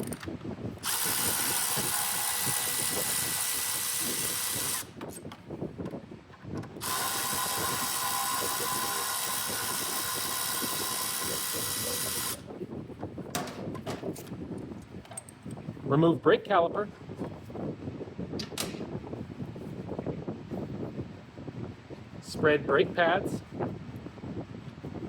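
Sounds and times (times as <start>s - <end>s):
power tool driving socket: 0.0s - 5.3s, 6.7s - 12.4s.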